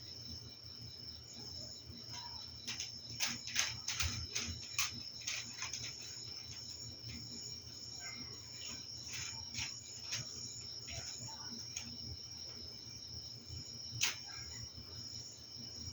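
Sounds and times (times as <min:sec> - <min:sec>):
crickets trilling: 0:00.0 - 0:15.9
electric fan hum: 0:00.0 - 0:15.9
light clicks and rustles: 0:02.1 - 0:12.7, 0:13.9 - 0:14.7.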